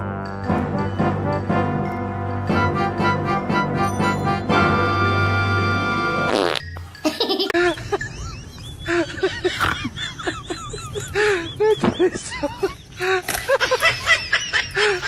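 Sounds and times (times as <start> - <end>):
person laughing: 7.0 - 15.0.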